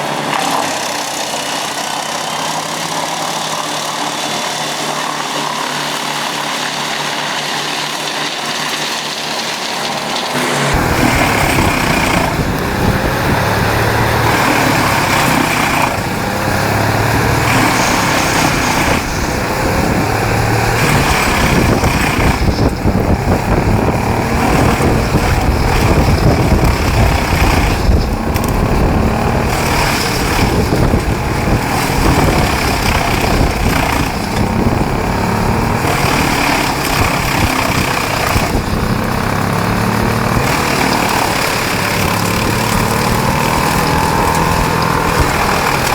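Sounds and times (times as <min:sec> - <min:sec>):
grinding of material being chipped: 0:00.0 - 0:45.9
wood chipper engine hum: 0:00.0 - 0:45.9.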